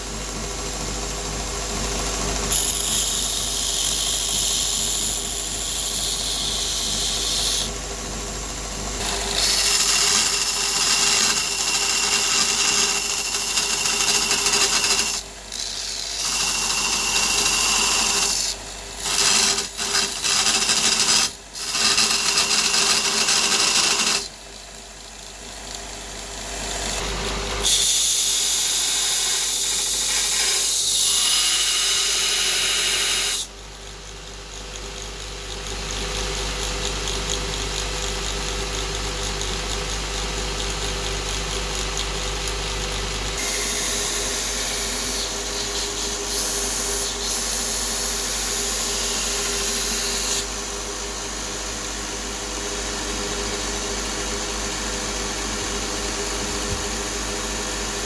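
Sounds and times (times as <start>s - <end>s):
motor hum: 51.9s - 58.0s.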